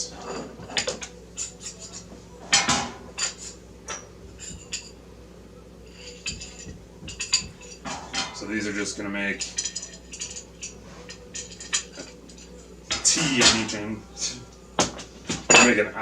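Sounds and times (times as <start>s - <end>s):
metal rails clinking and clattering: 0.0s - 5.0s, 5.9s - 13.9s, 14.8s - 15.9s.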